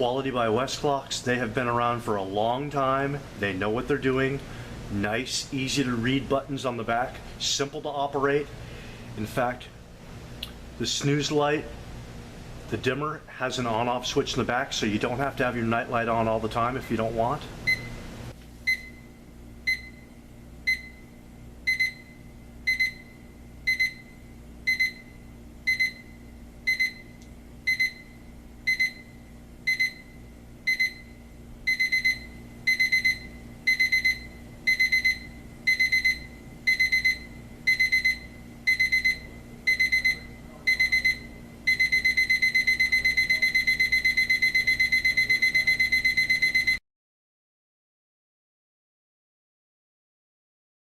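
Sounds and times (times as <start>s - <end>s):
alarm clock beeping: 19.7s - 20.1s, 20.7s - 21.1s, 21.7s - 46.8s.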